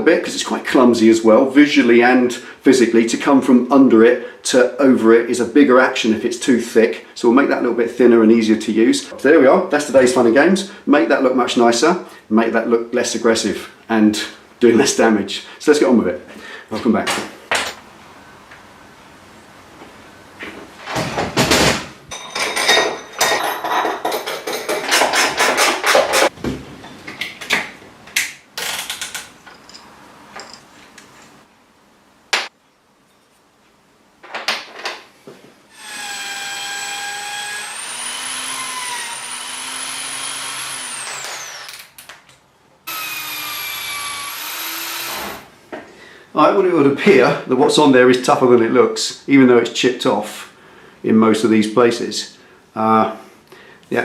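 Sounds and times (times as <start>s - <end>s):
tools scraping on metal: 22.1s - 26.3s
small power tool whining: 35.7s - 42.0s, 42.9s - 45.5s.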